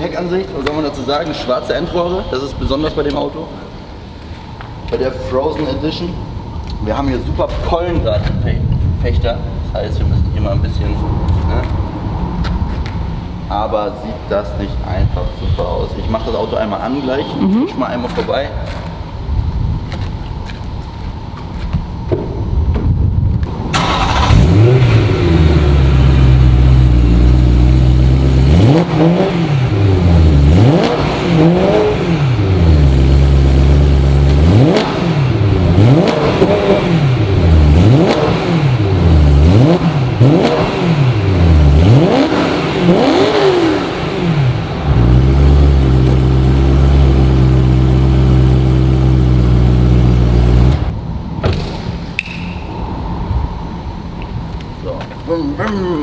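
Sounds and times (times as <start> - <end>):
car engine idling and revving: 23.4 - 51.4.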